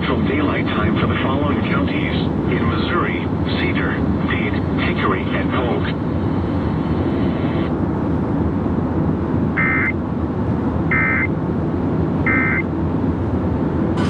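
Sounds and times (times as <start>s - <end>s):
road noise inside vehicle: 0.0s - 14.0s.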